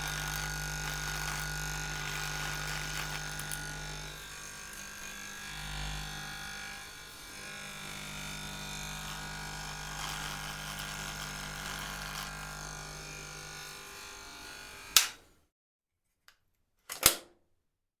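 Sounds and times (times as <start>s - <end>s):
electric shaver buzzing: 0.0s - 15.3s
shaver switch click: 14.9s - 15.2s.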